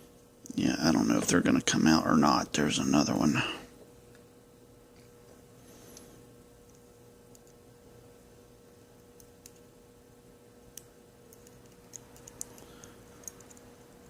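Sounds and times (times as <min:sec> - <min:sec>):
faint steady hum: 0:00.0 - 0:14.0
small metallic clicks: 0:10.8 - 0:13.7.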